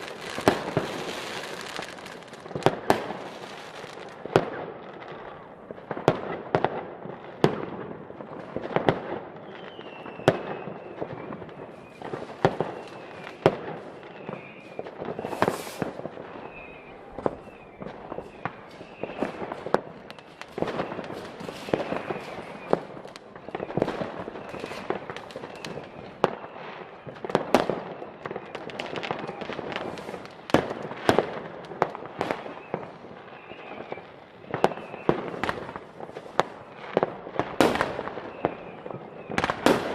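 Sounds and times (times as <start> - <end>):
fireworks banging: 0.0 - 39.9
fireworks crackling: 0.0 - 39.9
faint falling whistles: 9.4 - 27.2, 27.8 - 30.1, 32.2 - 35.5, 38.2 - 39.5
hissing rush: 15.3 - 16.0.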